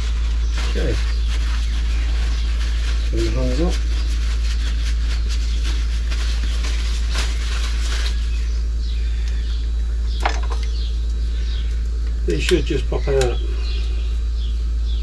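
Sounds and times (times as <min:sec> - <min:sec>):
faint bird chirps: 0:00.0 - 0:15.0
steady low hum: 0:00.0 - 0:15.0.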